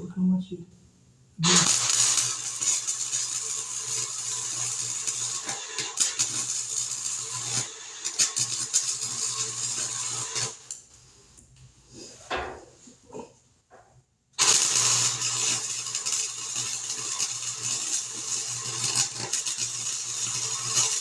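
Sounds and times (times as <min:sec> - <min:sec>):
welder crackling hiss: 0:01.4 - 0:11.4, 0:14.4 - 0:21.0.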